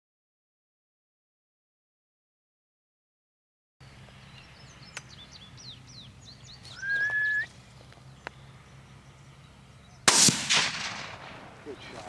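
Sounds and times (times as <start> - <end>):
small birds chirping: 3.8 - 10.2, 11.5 - 12.0
loud rising whistle: 6.8 - 7.5.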